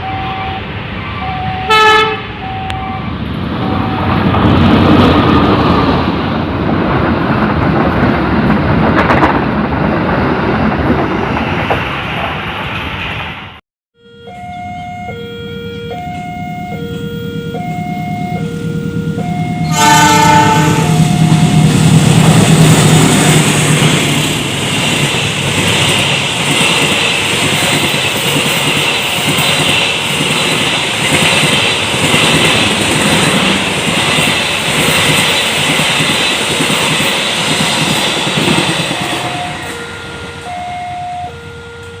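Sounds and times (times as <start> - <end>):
two-tone crossing alarm: 0.0 - 4.2, 14.0 - 22.6, 37.4 - 42.0
train rumbling and clacking: 0.0 - 13.6, 14.5 - 42.0
locomotive horn: 1.2 - 4.1, 14.0 - 23.9, 38.9 - 42.0.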